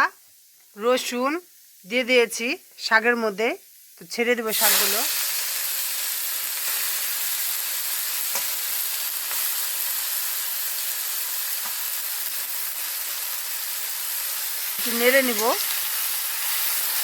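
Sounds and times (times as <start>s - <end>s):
leaves sizzling in hot oil: 0.0s - 17.0s.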